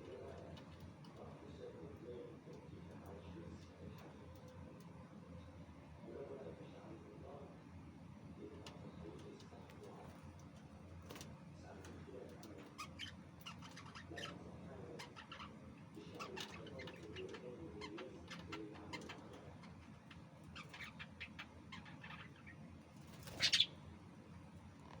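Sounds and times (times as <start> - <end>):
lovebirds chirping and chattering: 12.4 - 23.9.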